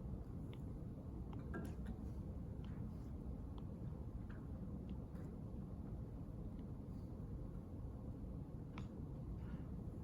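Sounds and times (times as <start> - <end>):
ventilation hum: 0.0 - 10.0
faint clicks and taps: 0.4 - 6.8, 8.7 - 9.0.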